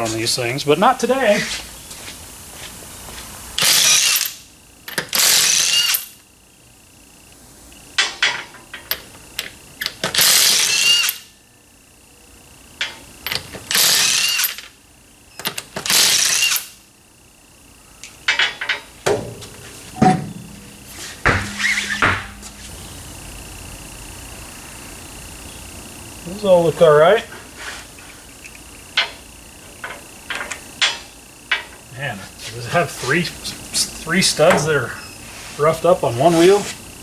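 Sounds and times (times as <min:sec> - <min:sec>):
impact wrench bursts: 0:03.6 - 0:06.2, 0:09.8 - 0:11.3, 0:13.2 - 0:14.6, 0:15.5 - 0:16.8, 0:20.0 - 0:23.0
knocks: 0:19.1 - 0:22.7.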